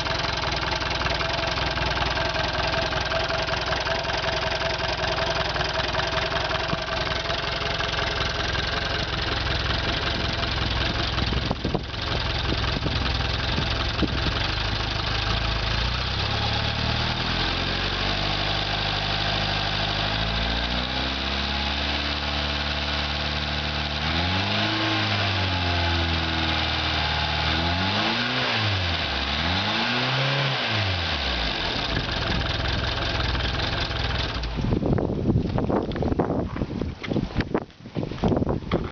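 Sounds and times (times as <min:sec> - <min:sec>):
outboard motor revving: 0:00.0 - 0:34.5.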